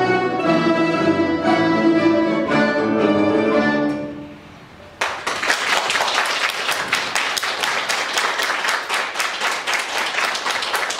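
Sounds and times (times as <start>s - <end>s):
audience applauding: 5.0s - 10.9s.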